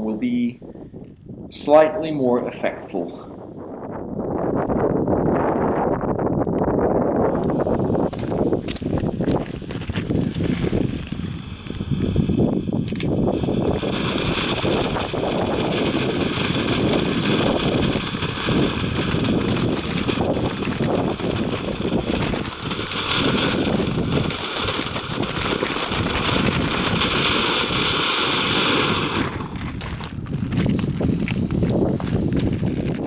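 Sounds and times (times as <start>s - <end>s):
wind buffeting microphone: 0.0s - 33.0s
firework hissing: 7.2s - 33.0s.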